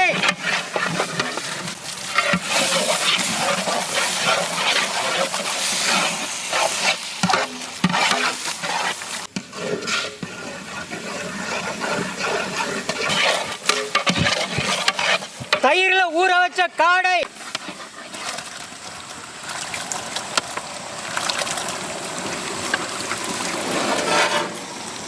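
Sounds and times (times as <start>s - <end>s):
ladle scraping a pot: 0.0s - 15.9s, 17.3s - 18.5s, 23.5s - 24.7s
tomatoes sizzling in oil: 0.0s - 16.4s, 17.2s - 25.0s.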